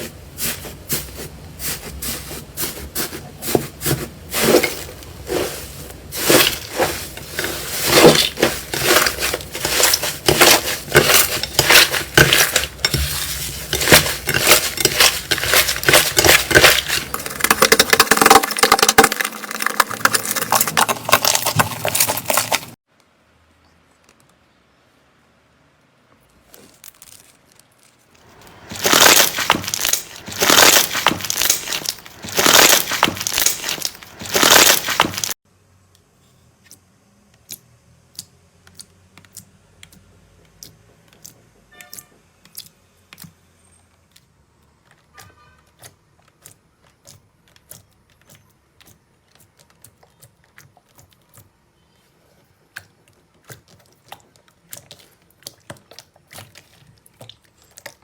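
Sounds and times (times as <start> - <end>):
slime crackling: 2.0 - 22.8, 28.5 - 35.4.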